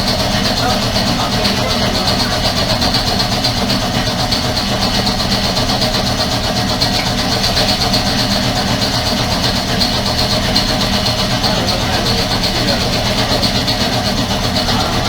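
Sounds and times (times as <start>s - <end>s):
air compressor running: 0.0s - 15.0s.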